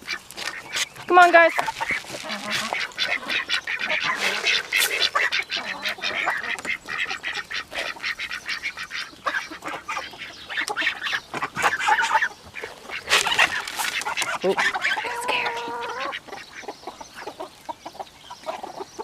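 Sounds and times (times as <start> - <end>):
young geese and ducks calling: 0.0 - 19.0.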